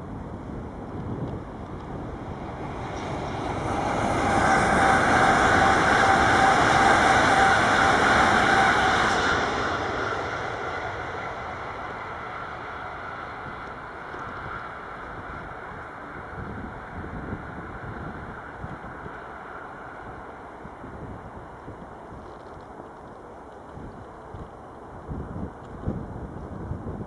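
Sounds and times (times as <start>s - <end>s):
train passing on tracks: 0.0s - 27.0s.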